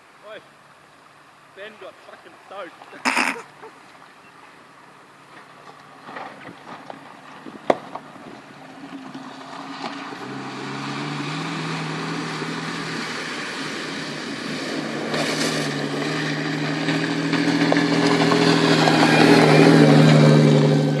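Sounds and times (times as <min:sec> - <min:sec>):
vehicle engine drone: 0:00.0 - 0:21.0
rushing water: 0:08.4 - 0:21.0.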